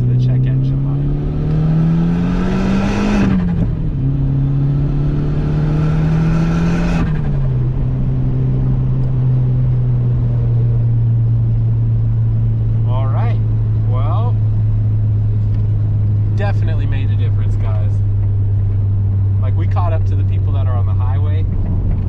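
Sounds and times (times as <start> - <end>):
car engine accelerating hard: 0.0 - 22.0.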